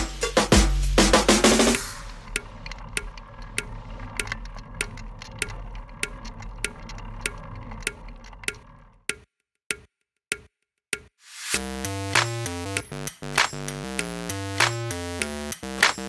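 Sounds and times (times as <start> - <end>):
sharp ticks: 2.3 - 10.4.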